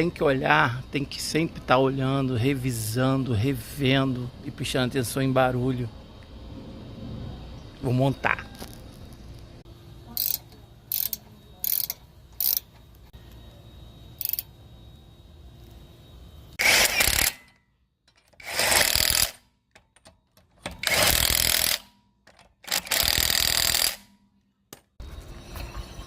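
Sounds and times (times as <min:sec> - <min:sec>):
hand tools clicking: 0:10.2 - 0:12.8, 0:18.1 - 0:24.1
impact wrench bursts: 0:10.2 - 0:12.8, 0:14.2 - 0:14.5, 0:16.6 - 0:24.1.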